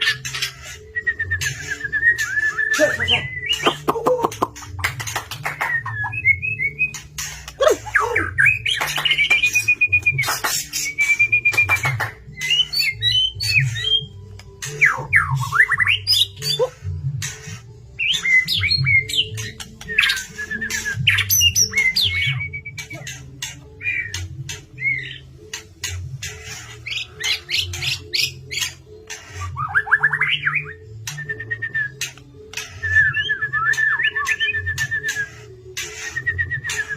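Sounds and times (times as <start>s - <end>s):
songbird singing whistled phrases: 0.0s - 3.9s, 8.2s - 16.6s, 26.9s - 36.9s
harsh squawky bird calls: 0.0s - 36.9s.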